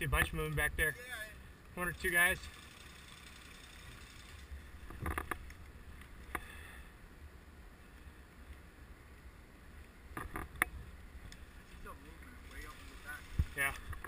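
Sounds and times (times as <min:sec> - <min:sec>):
wind rumble on microphone: 0:13.0 - 0:14.0.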